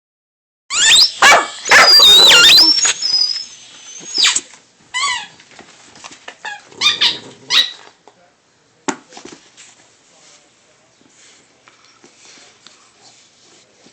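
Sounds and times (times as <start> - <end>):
rubber squeaky toy squeaking: 0.7 - 5.4, 6.4 - 7.8.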